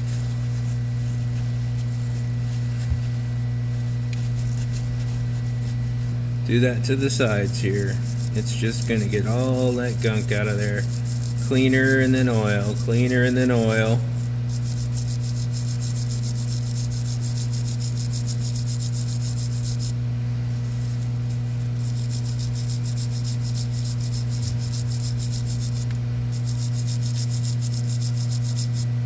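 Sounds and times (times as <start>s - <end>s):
wire brush scratching metal: 3.8s - 20.0s, 20.6s - 29.0s
rotary tool motor humming: 6.6s - 20.0s, 20.7s - 29.0s.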